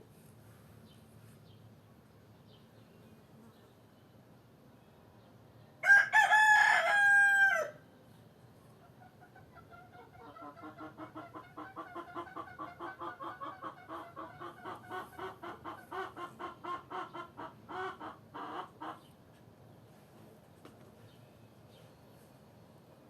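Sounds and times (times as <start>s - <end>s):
hen clucking and squawking: 8.8s - 19.1s.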